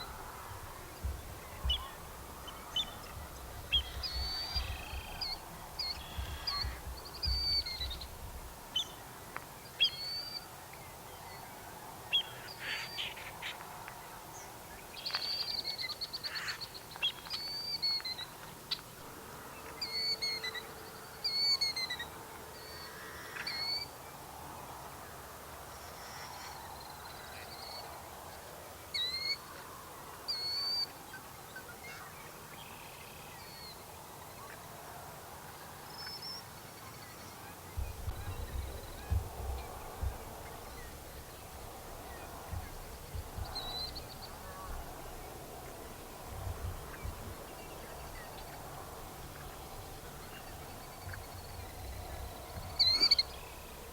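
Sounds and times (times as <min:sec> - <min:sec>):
marsh birds whistling: 0:01.4 - 0:08.1, 0:49.3 - 0:53.6.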